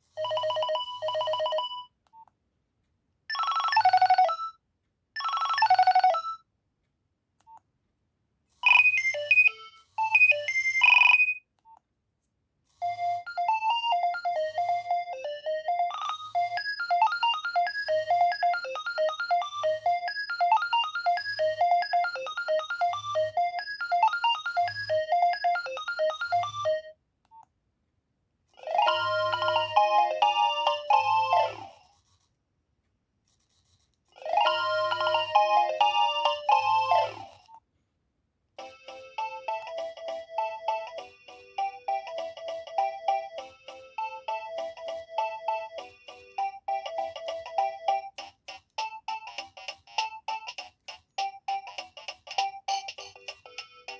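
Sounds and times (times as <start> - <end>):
electronic ringtone melodies: 0.2 - 1.9, 3.3 - 4.5, 5.2 - 6.4, 8.6 - 11.4, 12.8 - 26.9, 28.6 - 31.8, 34.2 - 37.4, 38.6 - 48.2.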